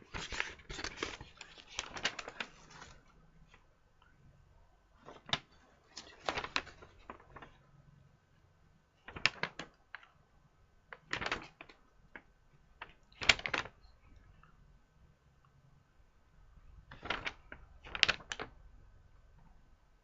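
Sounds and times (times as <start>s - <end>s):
plastic rustling: 0.0s - 3.7s, 5.0s - 7.6s, 9.0s - 10.1s, 10.9s - 13.8s, 16.9s - 18.6s.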